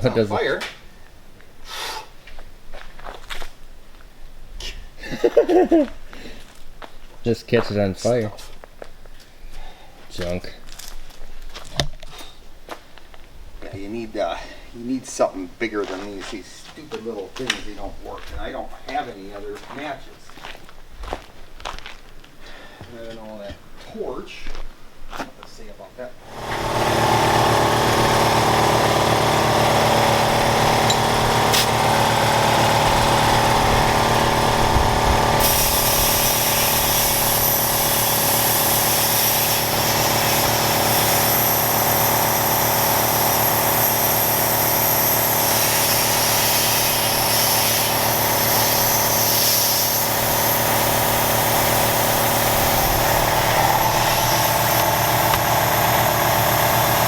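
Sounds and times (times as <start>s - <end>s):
hiss: 1.6s - 2.1s, 35.4s - 57.0s
engine running steadily: 26.2s - 57.0s.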